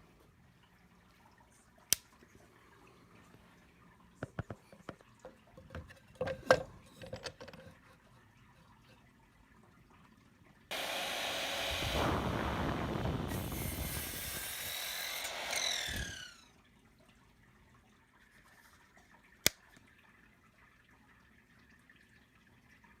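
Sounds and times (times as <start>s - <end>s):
miter saw running: 10.7s - 16.4s.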